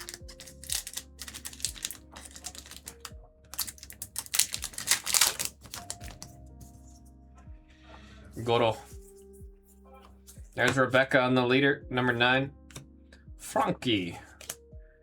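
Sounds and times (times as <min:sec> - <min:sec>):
cards clicking: 0:00.0 - 0:06.3, 0:14.3 - 0:14.6
foil wrapper crinkling: 0:00.0 - 0:06.3
quiet background music: 0:00.0 - 0:15.0.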